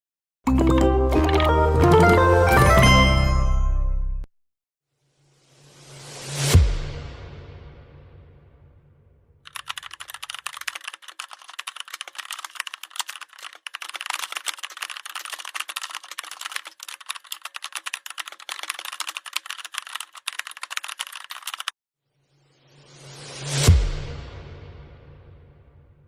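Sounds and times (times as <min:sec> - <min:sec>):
fast keyboard typing: 0:00.8 - 0:01.6, 0:09.5 - 0:21.8.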